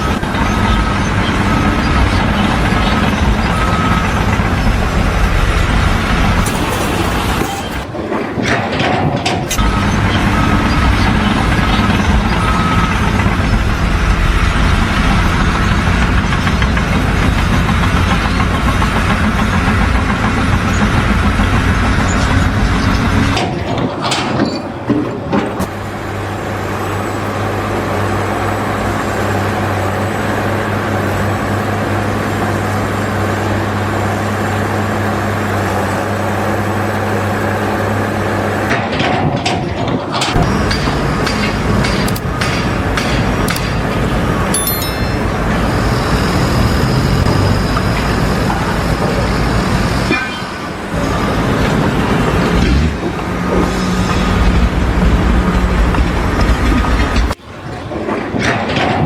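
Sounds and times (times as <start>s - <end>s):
engine hum: 0.0s - 59.0s
heavy engine running: 0.0s - 59.0s.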